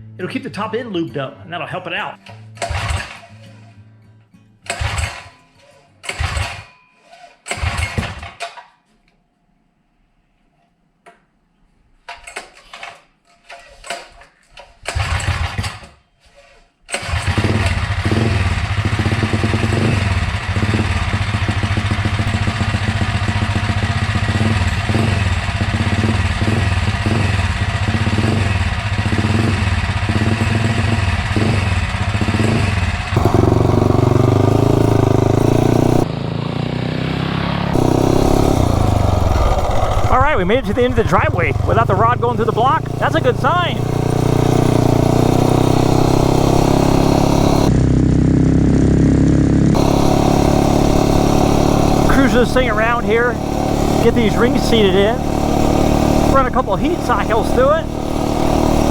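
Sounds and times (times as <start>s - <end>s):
minibike engine starting and running: 2.6s - 3.2s, 4.7s - 5.3s, 6.0s - 6.7s, 7.5s - 8.4s, 14.8s - 15.9s, 16.9s - 58.9s.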